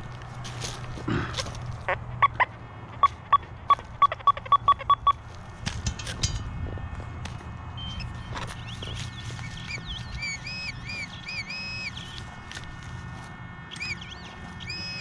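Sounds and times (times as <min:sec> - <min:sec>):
metal detector beeping: 0:01.9 - 0:05.4, 0:07.8 - 0:12.4, 0:13.7 - 0:15.0.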